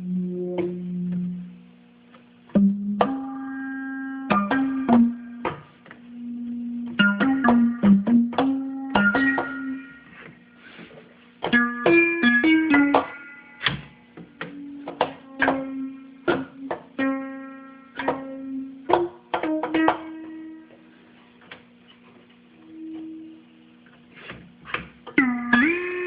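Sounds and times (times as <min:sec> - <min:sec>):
plucky synthesizer notes: 0:00.0 - 0:01.7, 0:02.4 - 0:10.3, 0:11.4 - 0:20.9, 0:25.1 - 0:26.0
steady low synth tone: 0:00.0 - 0:10.6, 0:11.5 - 0:18.9, 0:22.4 - 0:23.9.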